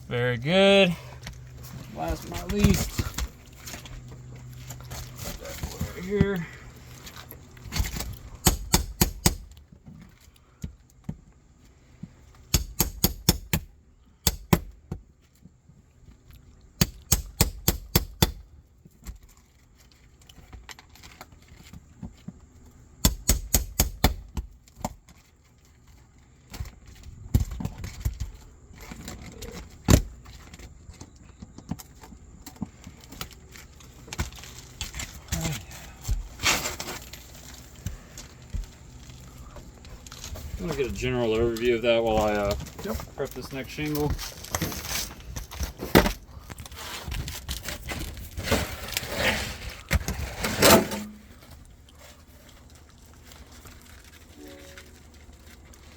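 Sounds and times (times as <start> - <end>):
hammer strikes on metal: 12.5 - 13.6.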